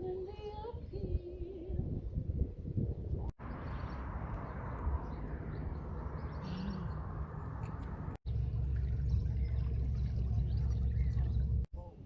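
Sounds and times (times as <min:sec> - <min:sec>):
low rumbling noise: 0:03.4 - 0:11.7.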